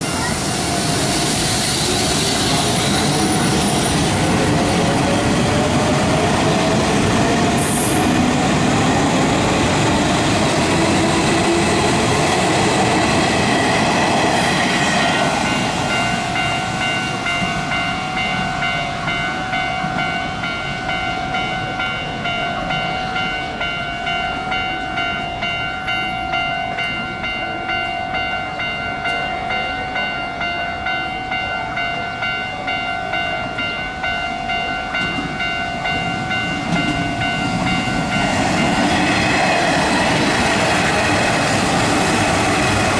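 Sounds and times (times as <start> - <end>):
electric trains passing: 0.0 - 42.9
level crossing bell ringing: 15.4 - 38.8.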